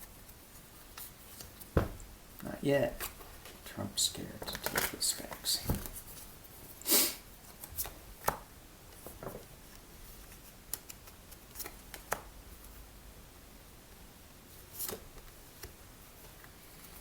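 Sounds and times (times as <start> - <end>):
cards being shuffled: 9.0 - 12.3.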